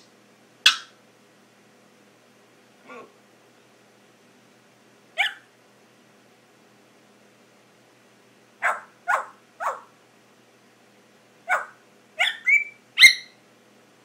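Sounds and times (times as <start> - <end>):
parrot imitating dog barks: 0.7 - 1.0, 2.8 - 3.2, 5.2 - 5.5, 8.6 - 9.9, 11.5 - 13.4.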